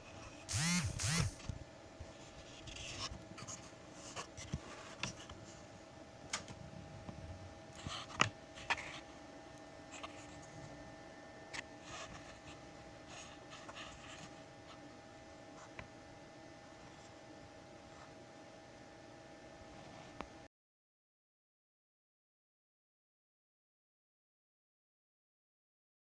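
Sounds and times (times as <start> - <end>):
faint steady hum: 0.0 - 20.5.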